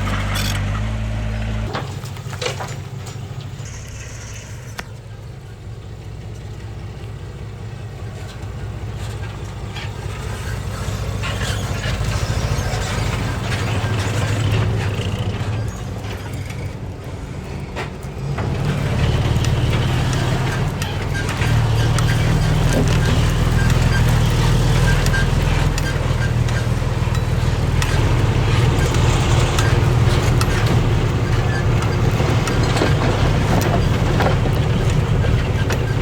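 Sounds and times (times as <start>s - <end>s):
heavy diesel engine droning: 0.0s - 36.0s
metal and stone clanks: 19.5s - 36.0s.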